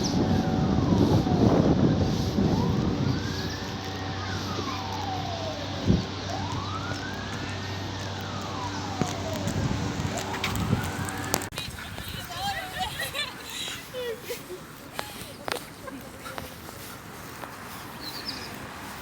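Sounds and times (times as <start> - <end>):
siren wailing: 0.0 - 11.5.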